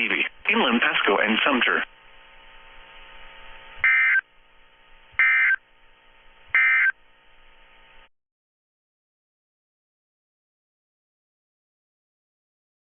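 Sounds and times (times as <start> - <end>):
faint steady hum: 0.0 - 8.1
digital data bursts: 3.8 - 4.2, 5.2 - 5.6, 6.5 - 7.0.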